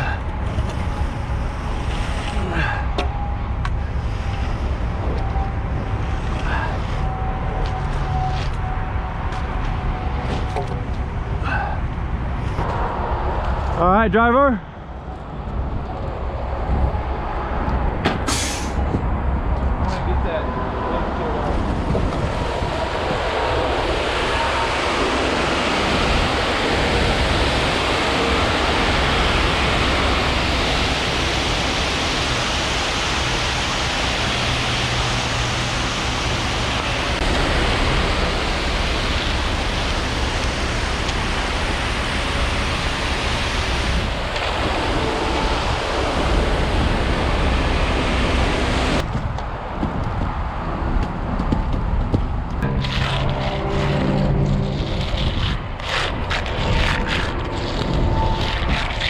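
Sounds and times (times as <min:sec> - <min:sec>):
truck engine running: 0:20.7 - 0:49.0, 0:50.8 - 0:59.0.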